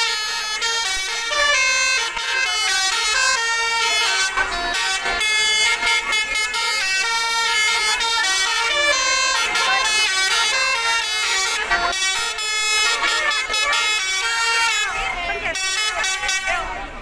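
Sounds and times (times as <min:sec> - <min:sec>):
multi-tone bus horn melody: 0:00.0 - 0:17.0.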